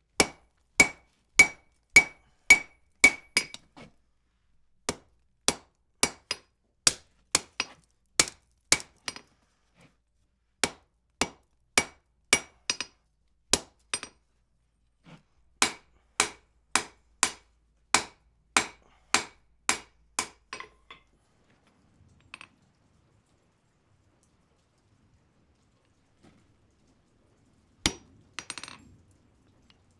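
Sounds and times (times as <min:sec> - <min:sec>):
hammer ringing on anvil: 0:00.8 - 0:03.5.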